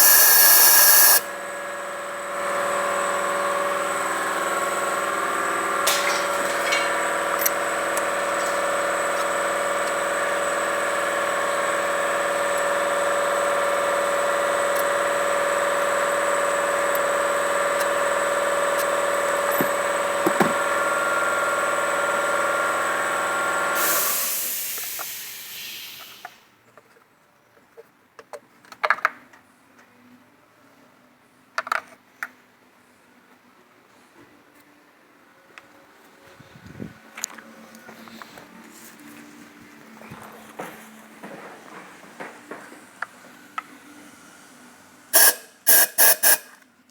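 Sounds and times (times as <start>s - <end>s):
whine of held tones: 0.0s - 5.7s
car engine running: 1.2s - 23.8s
brief rush of hiss: 23.8s - 26.5s.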